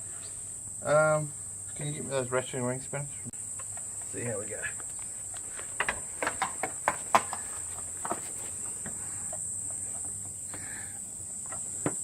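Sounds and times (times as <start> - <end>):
crickets chirping: 0.0 - 12.0
spanners clicking and knocking: 5.4 - 10.4.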